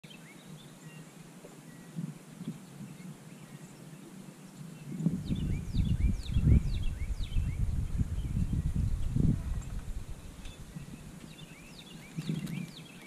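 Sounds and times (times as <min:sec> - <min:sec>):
small birds chirping: 0:00.0 - 0:13.0
low rumble: 0:05.1 - 0:11.0.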